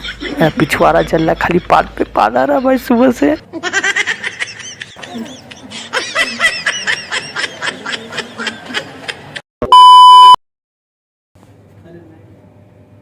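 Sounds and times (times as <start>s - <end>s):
loud electronic beep: 9.6s - 10.4s.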